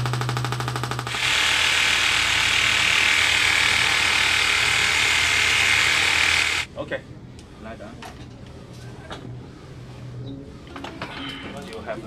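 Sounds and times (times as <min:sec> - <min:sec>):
percussive device buzzing: 0:00.0 - 0:06.7.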